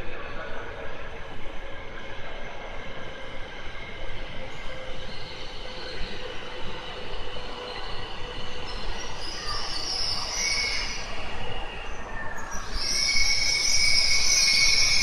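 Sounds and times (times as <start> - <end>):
train whine on rails: 0.0 - 15.0
high-pitched squeal: 8.7 - 15.0.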